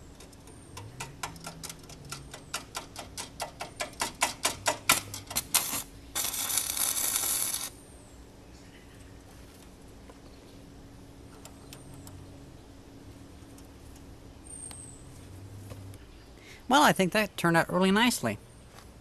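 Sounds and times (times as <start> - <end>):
arc welding crackles: 1.2 - 7.8.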